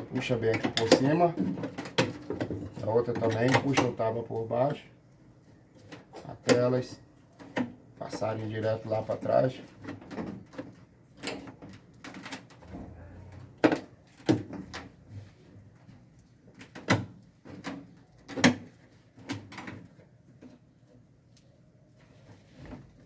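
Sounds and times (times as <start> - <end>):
knocks and clatter of washing machine: 9.9 - 15.0
sharp thumps: 12.6 - 14.8.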